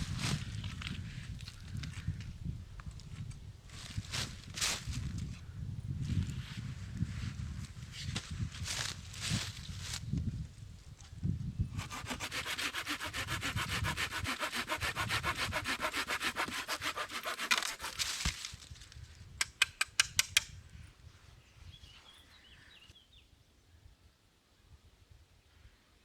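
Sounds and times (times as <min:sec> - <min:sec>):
wood being sawn by hand: 0:11.8 - 0:18.1.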